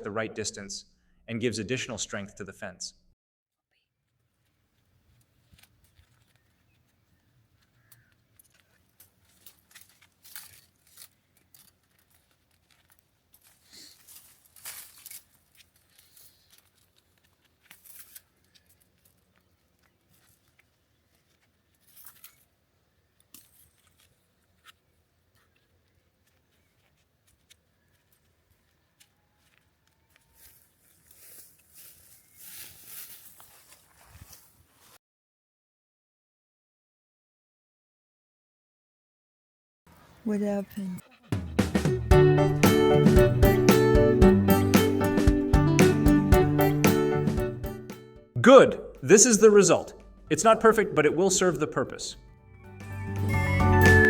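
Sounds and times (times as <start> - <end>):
rustling of wire and brush: 4.3 - 35.0.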